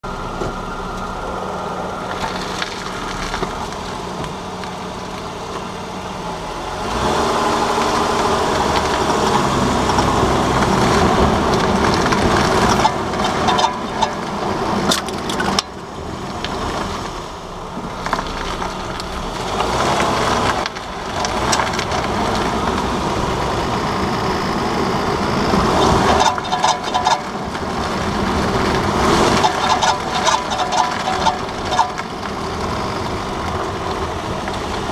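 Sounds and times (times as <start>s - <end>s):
car engine running: 0.0s - 34.9s.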